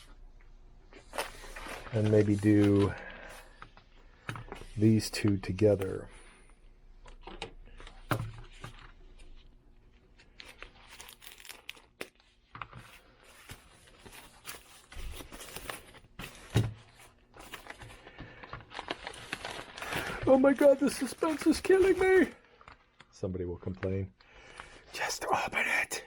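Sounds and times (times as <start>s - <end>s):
packaging crinkling and tearing: 10.2s - 12.4s, 13.7s - 23.1s.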